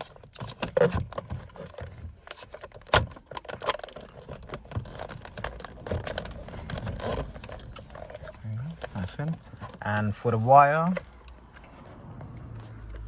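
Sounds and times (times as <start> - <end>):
plastic trim clicks and rattles: 0.0 - 8.1.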